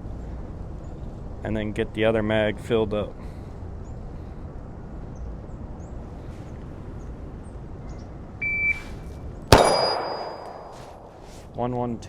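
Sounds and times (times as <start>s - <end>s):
shot timer beep: 8.4s - 8.8s
loud pistol shot: 9.5s - 11.2s.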